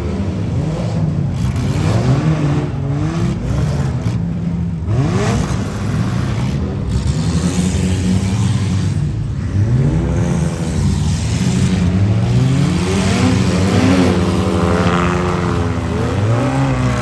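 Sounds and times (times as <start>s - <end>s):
car engine revving: 0.0s - 17.0s.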